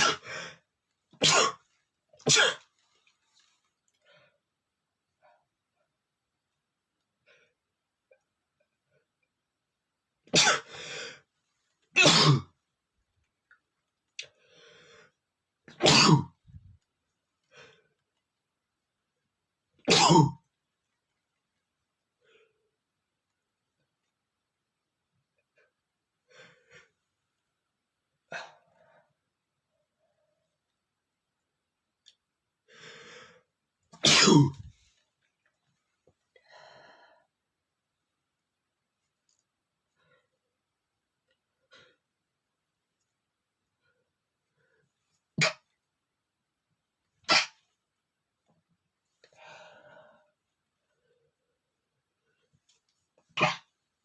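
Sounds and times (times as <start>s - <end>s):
man sneezing: 15.7s - 16.3s, 34.0s - 34.7s
faint breathing: 49.3s - 51.5s.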